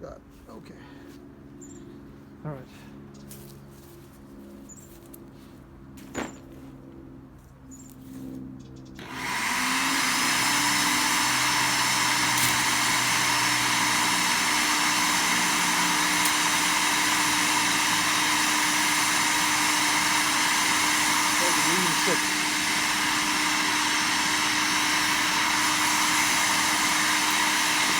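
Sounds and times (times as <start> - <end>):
electric wood chipper motor whirring: 9.0 - 27.9.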